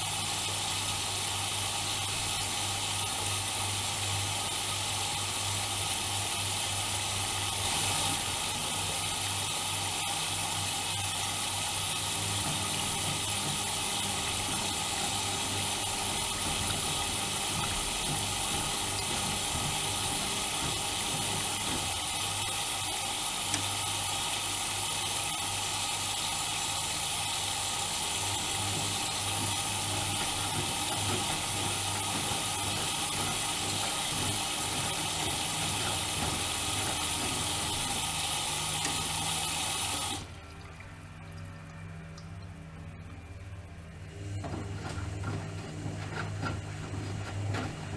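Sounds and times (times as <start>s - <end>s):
washing machine running: 0.0s - 47.9s.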